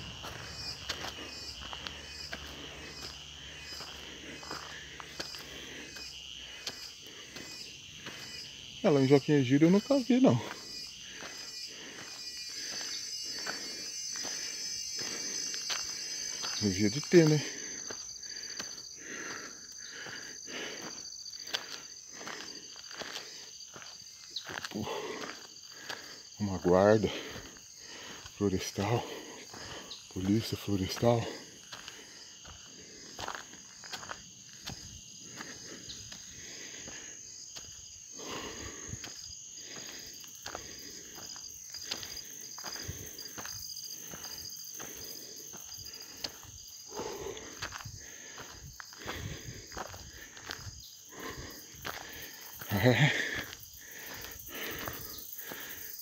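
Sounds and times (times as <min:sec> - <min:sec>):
footsteps on dirt road: 0:00.0 - 0:56.0
insects trilling: 0:00.0 - 0:56.0.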